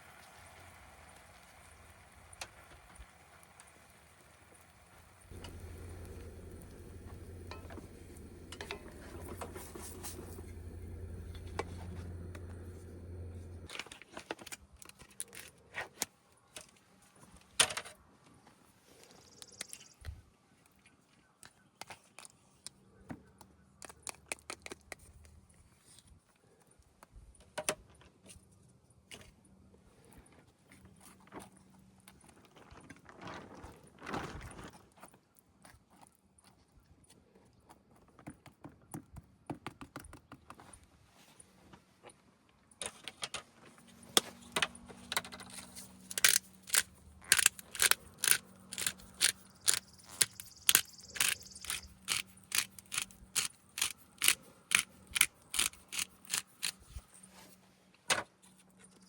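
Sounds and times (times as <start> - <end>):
faint low hum: 5.1 - 13.7
small hard objects clicking: 44.6 - 56.9.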